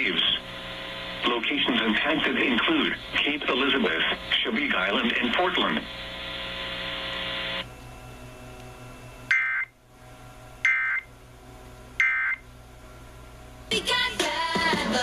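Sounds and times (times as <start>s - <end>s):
digital data tone bursts: 9.3s - 9.7s, 10.6s - 11.1s, 12.0s - 12.4s.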